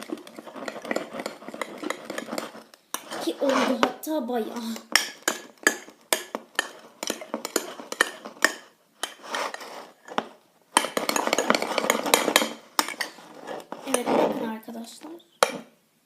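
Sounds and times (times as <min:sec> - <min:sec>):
clicking and scraping against container: 0:00.0 - 0:03.9, 0:05.6 - 0:14.5
utensil stirring slime: 0:00.0 - 0:04.0, 0:04.6 - 0:14.6.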